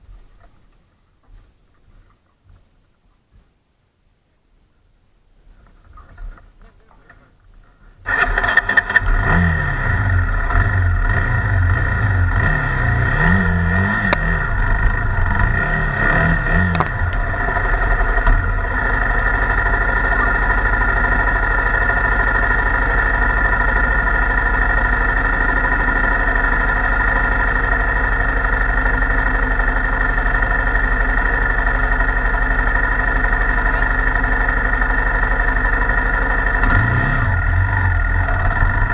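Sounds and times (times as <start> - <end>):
motorcycle engine revving and idling: 8.0 - 38.9.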